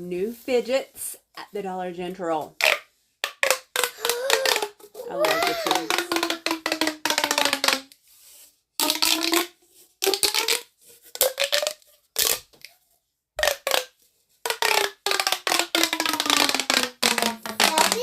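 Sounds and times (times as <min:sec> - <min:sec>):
pop tube toys clicking and buzzing: 0:02.6 - 0:08.0, 0:08.8 - 0:12.6, 0:14.5 - 0:18.0.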